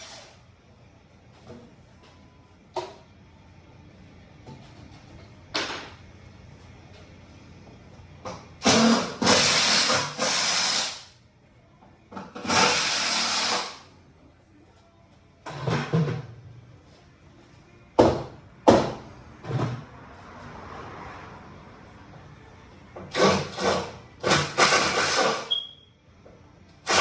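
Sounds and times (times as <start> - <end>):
power drill bursts: 8.6 - 11.1, 12.4 - 13.8, 24.3 - 25.6.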